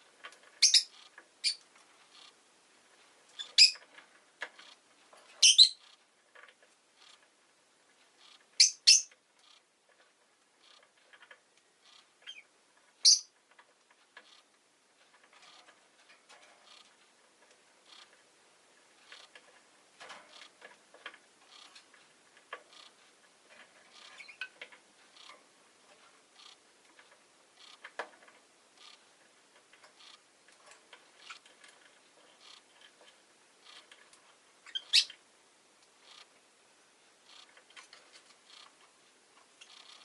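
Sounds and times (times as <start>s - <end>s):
bird chirp: 0.6s - 1.6s, 3.4s - 3.8s, 5.4s - 6.0s, 8.6s - 9.2s, 12.2s - 13.3s, 34.6s - 35.2s.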